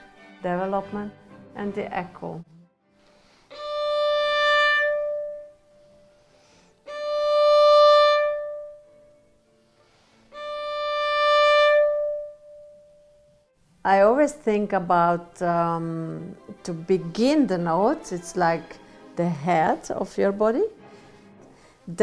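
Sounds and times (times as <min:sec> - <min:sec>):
violin long bowed notes: 0:03.2 - 0:13.3.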